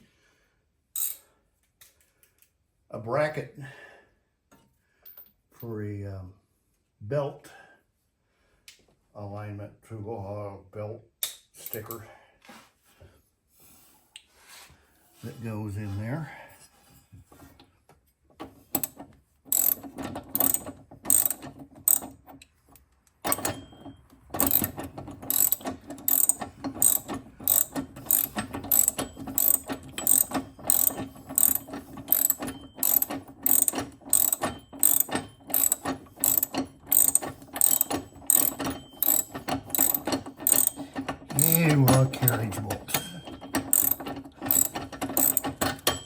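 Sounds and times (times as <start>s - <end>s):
ratchet wrench clicking: 1.0s - 1.3s, 18.8s - 22.2s, 24.4s - 46.0s.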